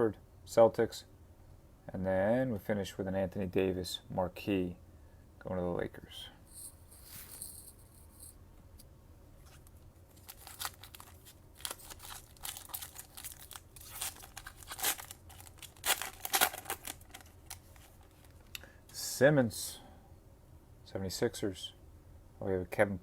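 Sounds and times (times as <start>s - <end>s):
foil wrapper crackling: 10.1s - 18.5s.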